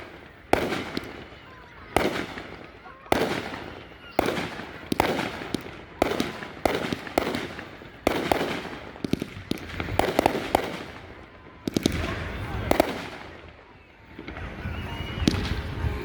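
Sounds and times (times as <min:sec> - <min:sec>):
fireworks booming: 0:00.0 - 0:16.0
fireworks popping and crackling: 0:00.0 - 0:16.0.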